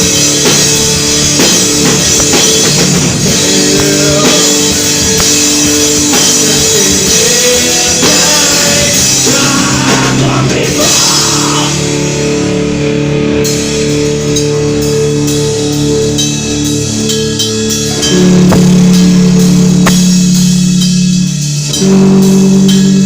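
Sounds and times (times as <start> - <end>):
rock band playing chords: 0.0 - 23.0.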